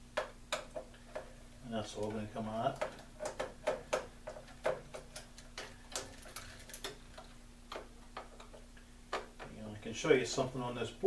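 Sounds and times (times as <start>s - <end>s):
faint steady hum: 0.0s - 11.0s.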